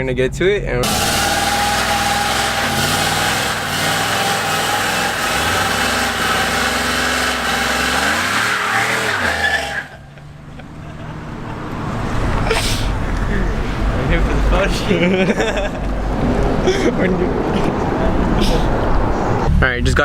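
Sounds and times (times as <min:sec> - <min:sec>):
road noise: 0:00.0 - 0:20.0
car engine revving: 0:00.8 - 0:14.8.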